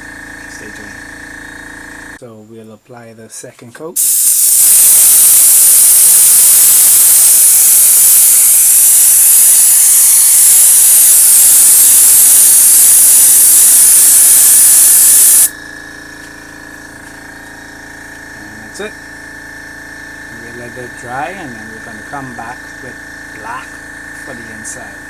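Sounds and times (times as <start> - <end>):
small compressor humming: 0.0 - 2.2, 4.0 - 25.0
airbrush spraying hiss: 4.0 - 15.5.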